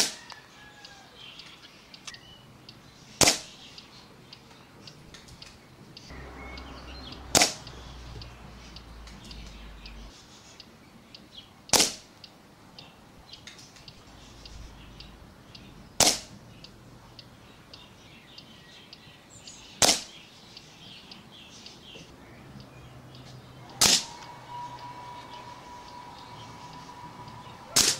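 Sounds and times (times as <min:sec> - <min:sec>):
air rifle shots: 0:03.2 - 0:03.6, 0:07.3 - 0:07.6, 0:11.7 - 0:12.1, 0:16.0 - 0:16.4, 0:19.8 - 0:20.2, 0:23.8 - 0:24.1.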